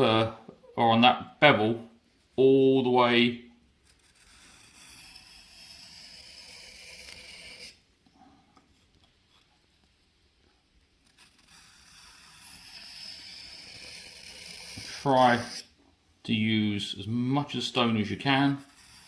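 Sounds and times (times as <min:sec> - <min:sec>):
knife scraping sharpening stone: 0:04.0 - 0:07.8, 0:11.2 - 0:15.7, 0:18.4 - 0:19.0.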